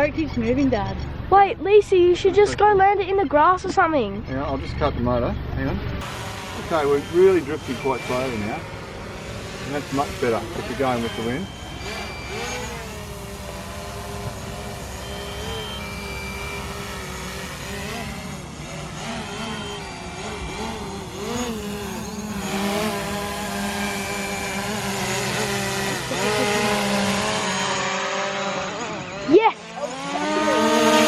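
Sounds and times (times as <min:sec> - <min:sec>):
drone propeller whine: 0:00.0 - 0:31.0
short high beeps: 0:10.4 - 0:13.0, 0:14.9 - 0:17.1.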